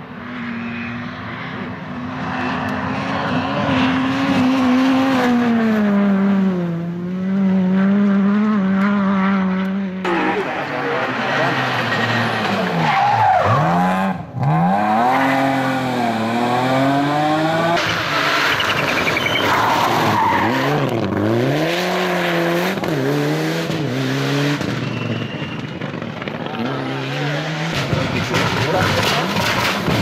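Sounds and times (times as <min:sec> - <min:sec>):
rally car engine revving: 0:00.2 - 0:30.0.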